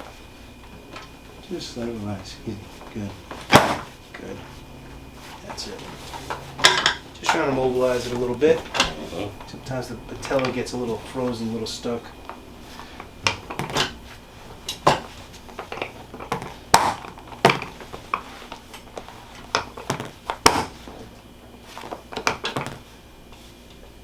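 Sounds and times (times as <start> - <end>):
knee joint clicks and pops: 13.0 - 14.0, 14.7 - 21.0, 21.8 - 22.9.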